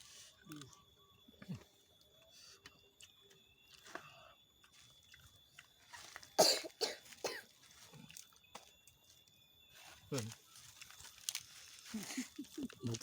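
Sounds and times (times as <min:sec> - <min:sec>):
man coughing: 0:06.4 - 0:07.4.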